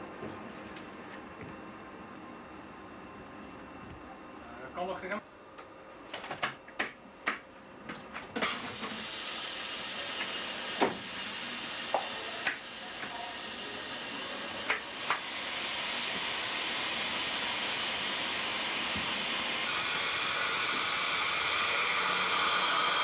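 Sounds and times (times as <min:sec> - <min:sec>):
compressed air hissing: 0:08.4 - 0:23.0.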